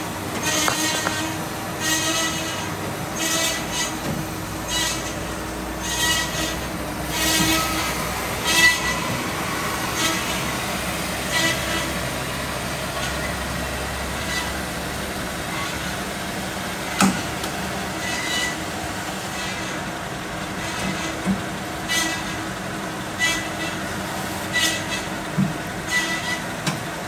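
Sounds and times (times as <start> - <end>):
bandsaw running: 0.2 - 15.8.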